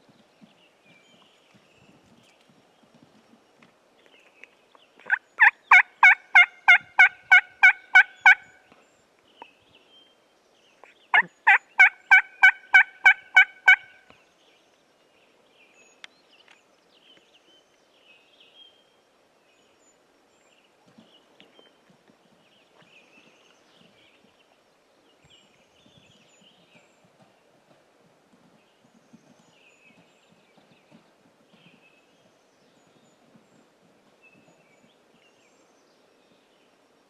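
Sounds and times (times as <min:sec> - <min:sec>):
turkey yelps: 0:05.1 - 0:08.5, 0:11.1 - 0:14.0.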